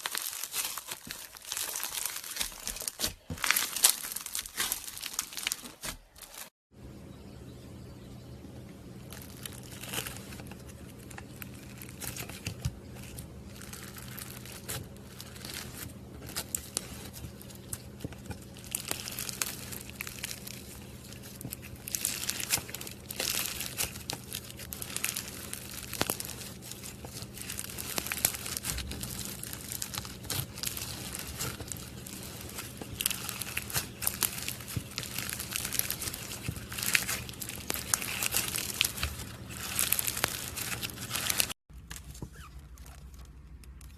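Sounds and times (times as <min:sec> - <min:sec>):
slime squeezed with crinkly clicks: 0:09.2 - 0:43.9.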